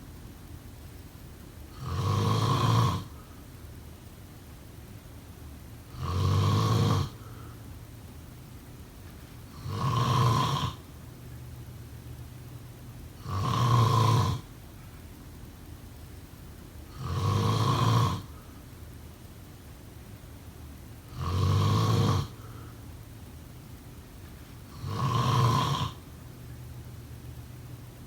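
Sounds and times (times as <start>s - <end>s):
person snoring: 1.7s - 3.2s, 5.9s - 7.4s, 9.6s - 10.8s, 13.2s - 14.5s, 16.9s - 18.3s, 21.1s - 22.6s, 24.7s - 26.0s.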